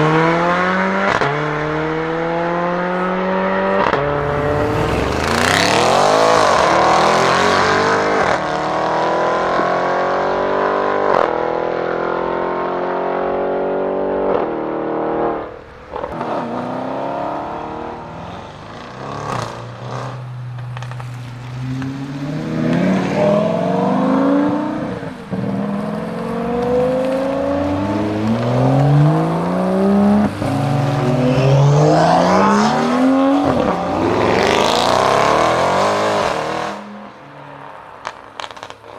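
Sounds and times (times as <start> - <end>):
car engine accelerating: 0.0 - 38.9
exhaust cracks: 1.1 - 8.5, 17.3 - 36.8.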